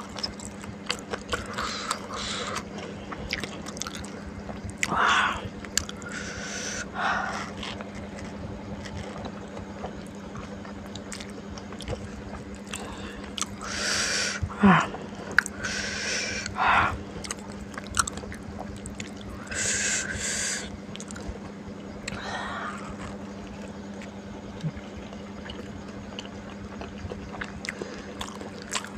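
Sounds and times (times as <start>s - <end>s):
person chewing: 0.0s - 21.4s, 22.0s - 28.9s
breathy puffs of air: 4.9s - 7.6s, 12.8s - 14.9s, 19.4s - 20.7s
vocal hoo: 12.8s - 17.0s.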